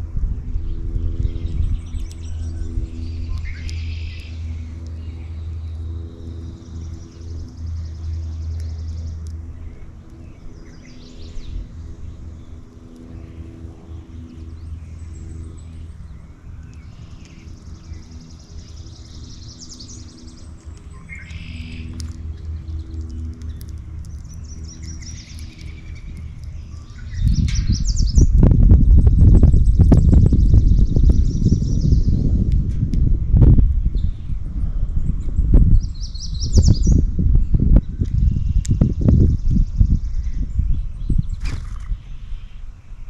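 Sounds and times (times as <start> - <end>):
low mechanical hum: 0.0 - 43.0
songbirds chirping and singing: 0.7 - 32.8.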